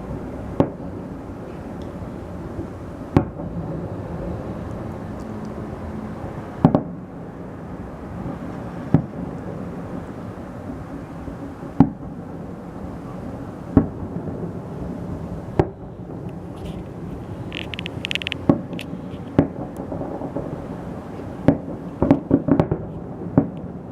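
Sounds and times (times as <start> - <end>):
firework shells booming: 0.4 - 4.2, 6.6 - 7.0, 11.7 - 12.5, 13.2 - 23.8.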